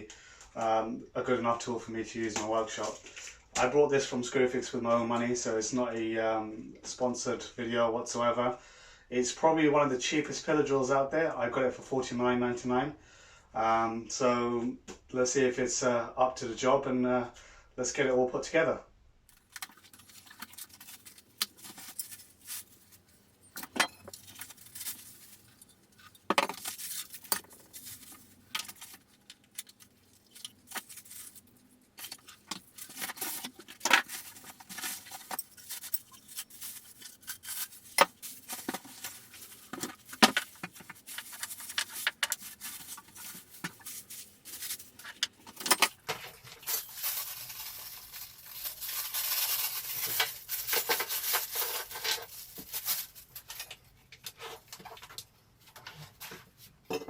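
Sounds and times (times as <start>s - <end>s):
rubbing rustling noise: 19.4s - 23.5s, 24.1s - 45.4s, 46.0s - 53.7s
metal parts clinking and scraping: 20.2s - 22.8s, 23.4s - 52.4s.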